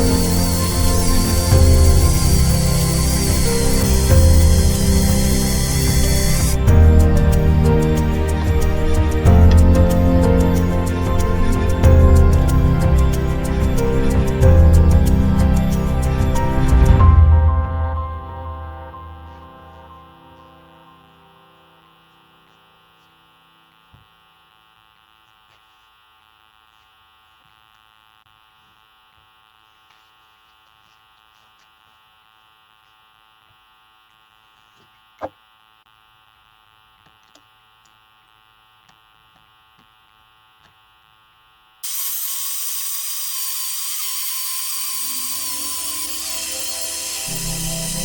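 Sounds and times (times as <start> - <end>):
electric chainsaw whining: 0.0 - 17.0, 41.8 - 48.0.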